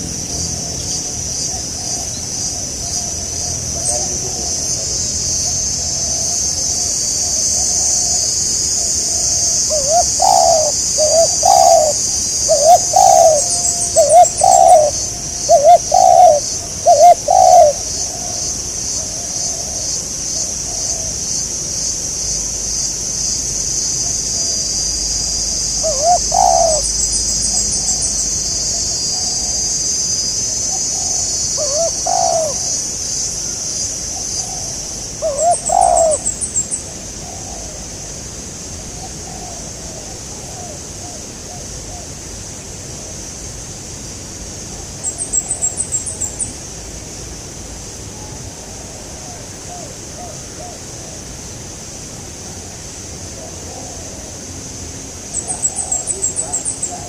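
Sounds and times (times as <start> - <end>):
doves cooing: 0.0 - 21.4, 23.4 - 37.9
high-pitched drone: 0.0 - 36.9.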